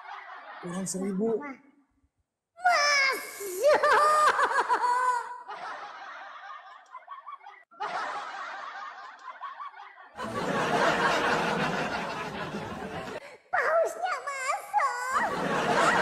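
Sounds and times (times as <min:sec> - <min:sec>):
crowd laughter: 0:00.0 - 0:00.7, 0:04.0 - 0:13.3, 0:15.1 - 0:16.0.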